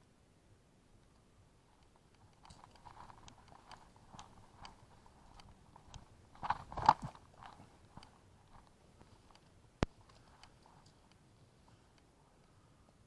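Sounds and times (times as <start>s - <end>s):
crunching footsteps: 2.0s - 11.1s.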